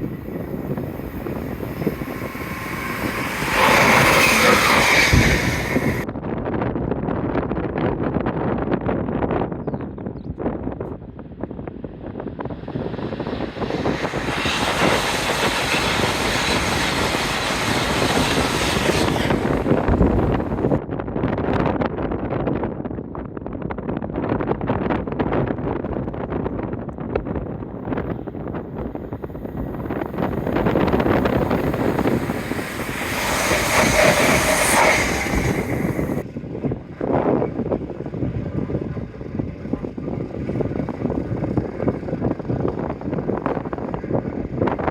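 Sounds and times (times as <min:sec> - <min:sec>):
train passing at speed: 0:00.0 - 0:06.0, 0:11.9 - 0:20.8, 0:27.6 - 0:44.9.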